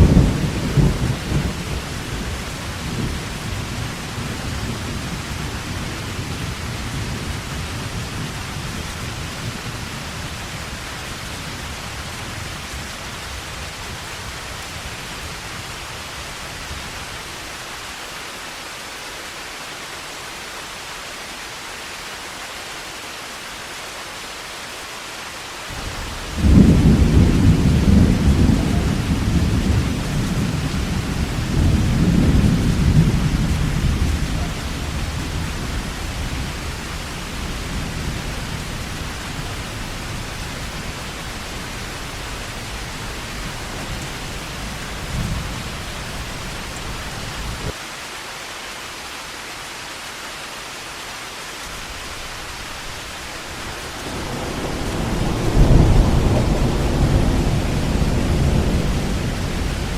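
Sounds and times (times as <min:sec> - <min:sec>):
thunder clap rolling: 0:00.0 - 0:05.8, 0:25.7 - 0:47.7, 0:53.3 - 0:59.9
heavy rain hissing: 0:00.0 - 0:59.9.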